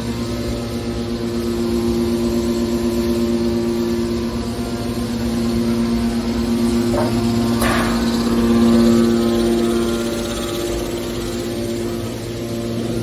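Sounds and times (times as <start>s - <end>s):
baling machinery humming: 3.8s - 13.0s
machinery clatter: 6.7s - 9.2s.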